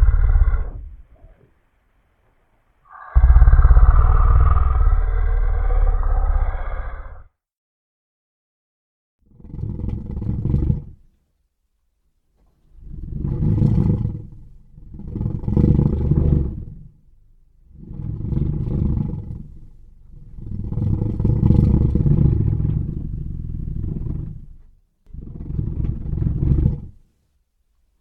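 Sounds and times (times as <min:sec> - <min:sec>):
creature deep roars: 0:00.0 - 0:01.4, 0:02.9 - 0:07.3.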